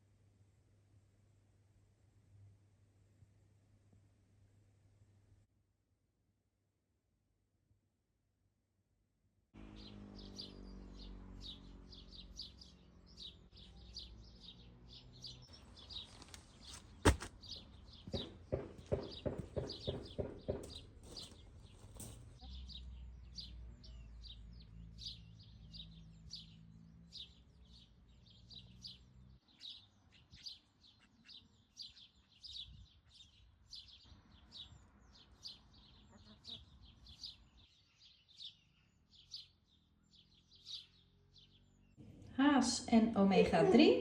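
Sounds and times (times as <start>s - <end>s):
quick knocks: 16.6s - 21.4s.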